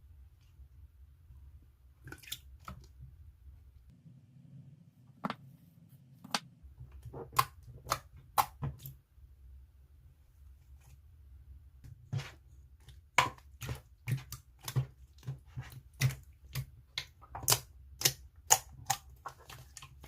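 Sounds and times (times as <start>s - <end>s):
slime squishing with wet pops: 7.1s - 9.0s, 12.2s - 20.0s.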